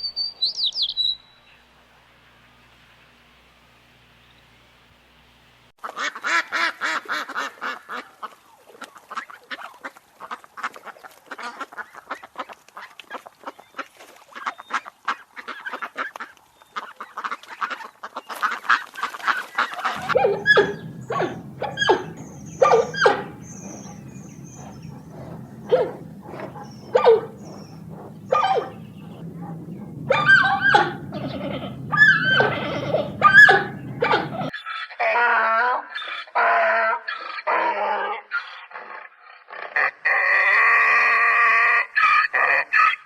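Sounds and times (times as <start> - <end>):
birds chattering: 20.0 - 34.5
low steady hum: 20.0 - 34.5.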